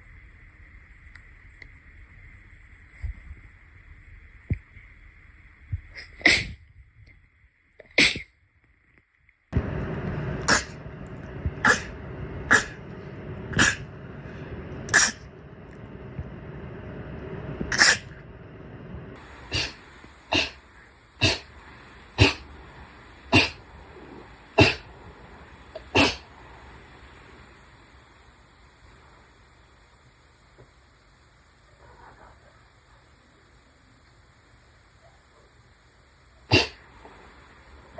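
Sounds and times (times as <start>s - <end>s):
short sharp sneezes: 7.9s - 8.3s, 36.5s - 36.8s.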